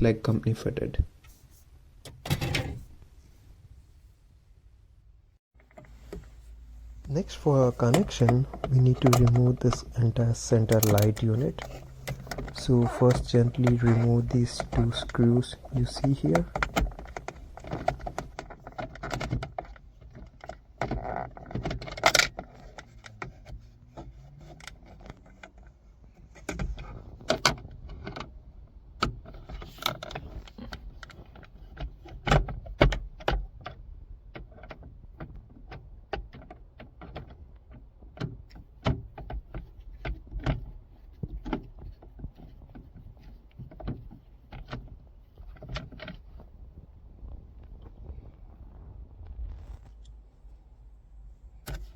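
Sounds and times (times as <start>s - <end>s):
handling small parts: 5.6s - 28.3s.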